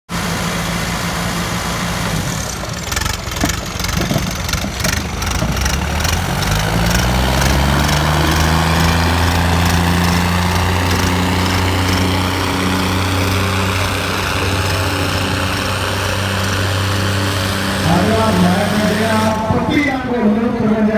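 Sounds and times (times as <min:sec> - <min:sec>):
diesel tractor engines revving: 0:00.1 - 0:20.9
sharp knocks: 0:03.4 - 0:12.4.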